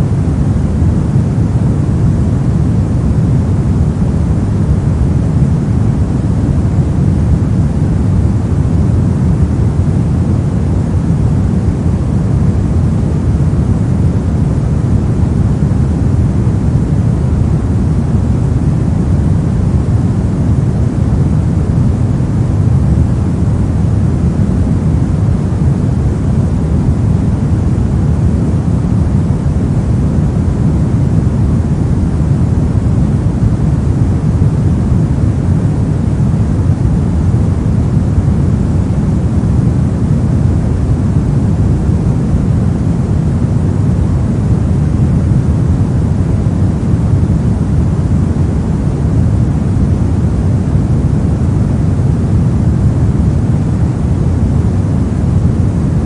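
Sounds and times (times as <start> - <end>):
steady pink noise hiss: 0.0 - 56.0.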